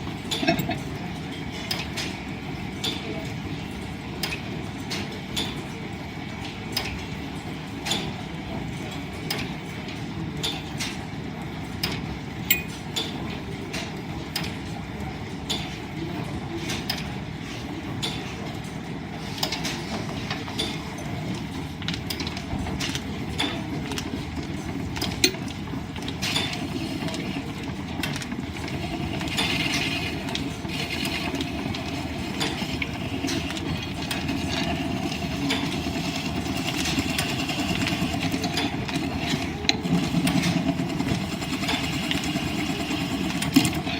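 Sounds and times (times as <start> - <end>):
wood lathe belts rumbling: 26.4 - 43.9.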